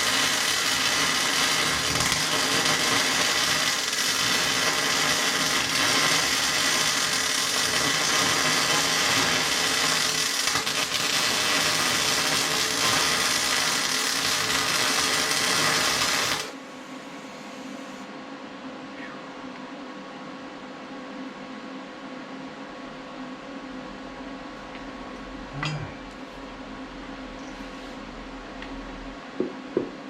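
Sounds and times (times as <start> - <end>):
arc welding crackle and sizzle: 0.0 - 18.1
steady hum: 0.0 - 30.0.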